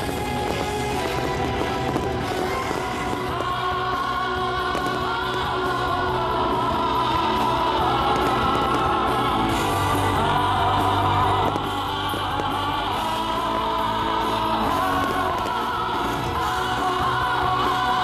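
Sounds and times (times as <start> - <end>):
choir-like soundtrack music: 0.0 - 18.0.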